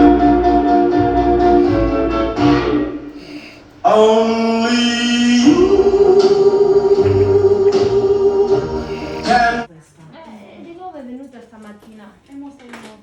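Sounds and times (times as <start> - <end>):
voices singing long notes: 3.8 - 9.7.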